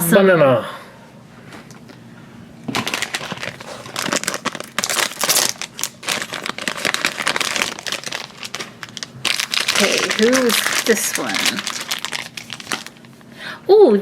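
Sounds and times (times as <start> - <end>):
plastic packet crinkling: 2.6 - 13.3.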